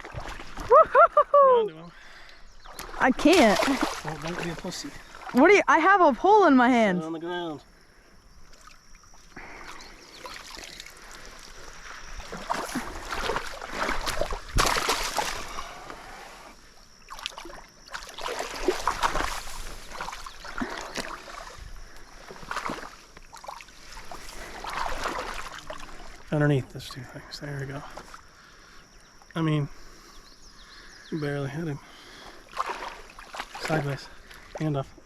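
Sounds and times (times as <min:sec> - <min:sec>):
fish splashing in water: 0:02.6 - 0:05.4, 0:08.5 - 0:16.0, 0:17.0 - 0:21.6, 0:22.2 - 0:26.2, 0:32.4 - 0:33.8.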